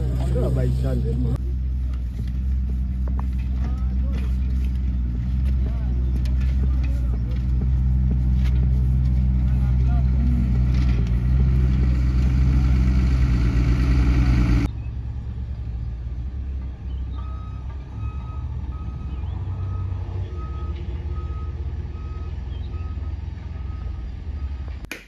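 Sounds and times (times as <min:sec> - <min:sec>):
heavy vehicle engine running: 0:00.0 - 0:24.9
reversing alarm beeping: 0:17.2 - 0:24.6.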